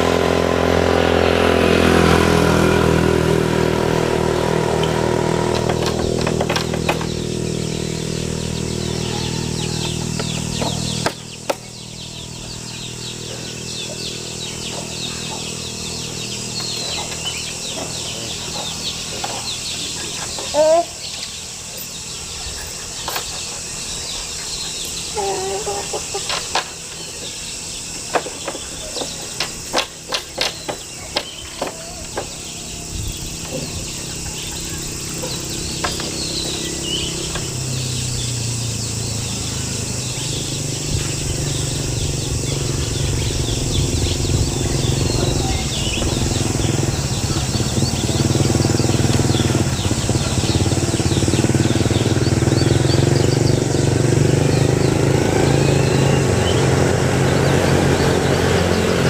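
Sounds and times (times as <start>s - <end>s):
birds chirping: 0.0s - 59.0s
engine running: 0.0s - 59.0s
steady high buzz: 0.0s - 59.0s
sharp knocks: 4.8s - 7.4s, 28.1s - 32.4s.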